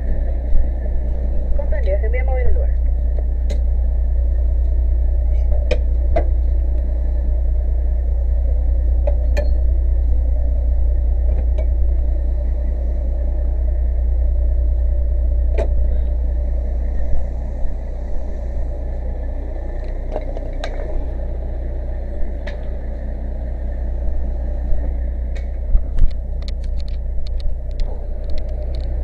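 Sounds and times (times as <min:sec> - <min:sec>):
fire engine motor rumbling: 0:00.0 - 0:29.0.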